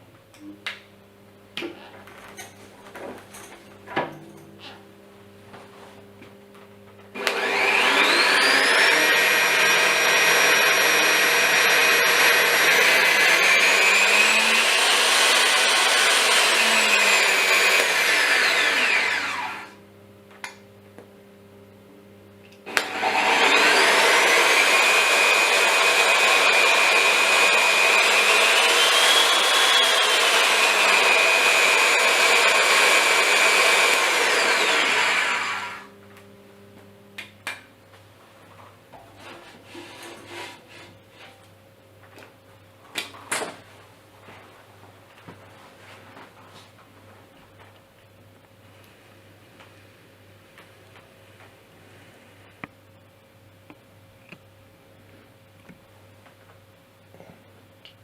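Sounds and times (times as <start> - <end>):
drilling machine whining: 7.2 - 19.8, 22.7 - 35.9.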